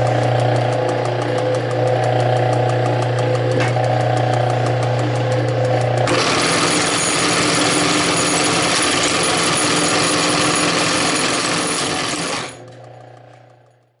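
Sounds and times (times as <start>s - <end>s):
sewing machine clattering: 5.8s - 12.7s.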